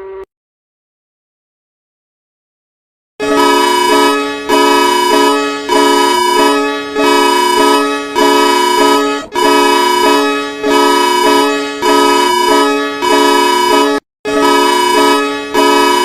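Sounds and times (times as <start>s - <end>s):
pulsing electronic alarm tone: 3.2s - 16.0s.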